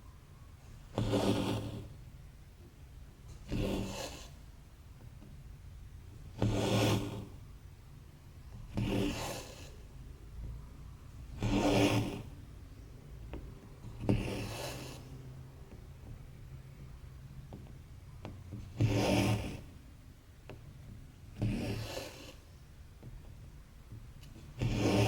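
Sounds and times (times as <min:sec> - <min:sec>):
thread rasping through fabric: 0:00.7 - 0:02.0, 0:03.3 - 0:04.5, 0:06.2 - 0:07.4, 0:08.6 - 0:09.8, 0:11.1 - 0:12.6, 0:13.2 - 0:25.0.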